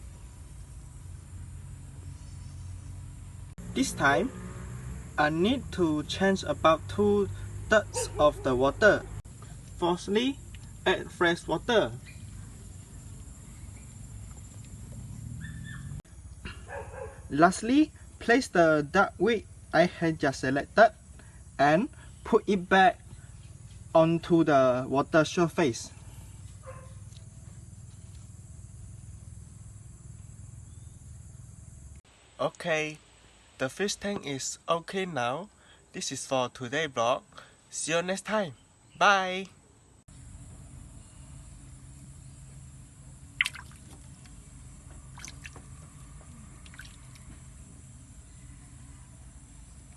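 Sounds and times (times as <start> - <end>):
steady low hum: 0.0 - 4.4
low outdoor rumble: 0.0 - 32.4, 40.0 - 49.9
small water drips: 43.3 - 47.5.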